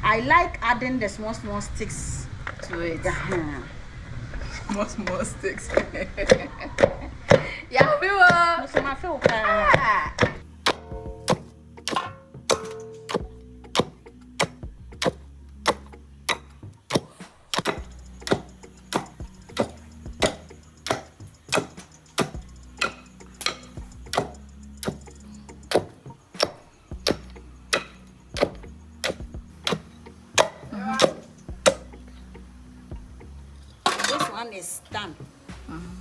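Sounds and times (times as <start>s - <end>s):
pestle pounding in mortar: 10.6s - 32.0s.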